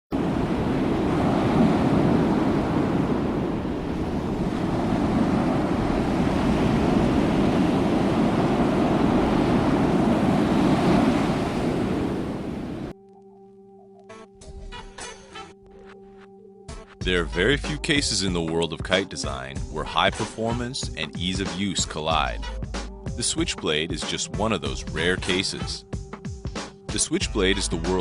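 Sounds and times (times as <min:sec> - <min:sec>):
surf: 0:00.1 - 0:12.9
wind buffeting microphone: 0:00.1 - 0:12.9.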